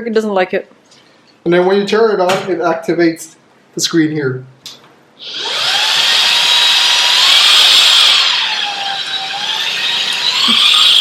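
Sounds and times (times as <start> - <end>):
vacuum motor whining: 5.2 - 11.0.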